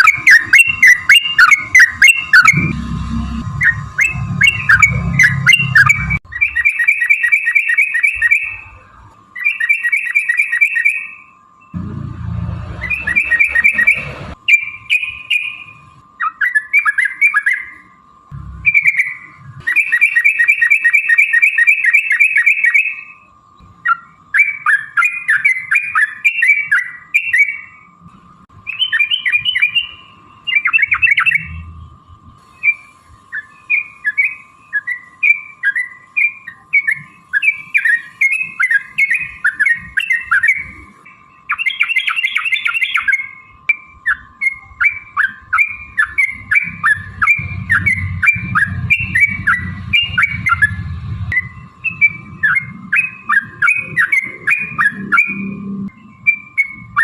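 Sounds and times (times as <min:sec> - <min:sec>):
bulbuls chirping: 0:00.0 - 0:11.9, 0:12.5 - 0:27.9, 0:28.6 - 0:31.8, 0:32.4 - 0:57.0
thin steady whine: 0:00.0 - 0:57.0
low rumble: 0:02.4 - 0:06.2, 0:11.8 - 0:14.4, 0:18.3 - 0:19.6, 0:46.8 - 0:52.9.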